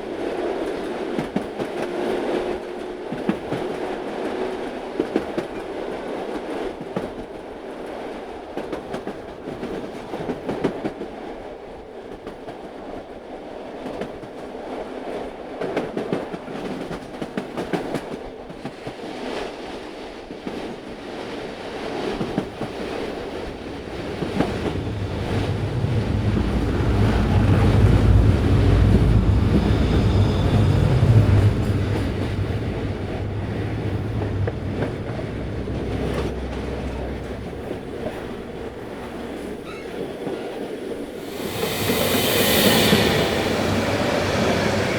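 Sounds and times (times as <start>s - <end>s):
train wheels clacking on rails: 20.3s - 44.9s
deep rumble: 23.3s - 39.6s.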